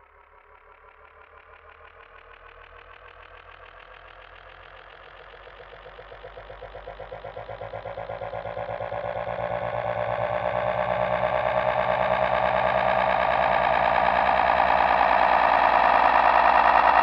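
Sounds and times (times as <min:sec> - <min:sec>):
pulsing rattling drone: 0:05.4 - 0:17.0.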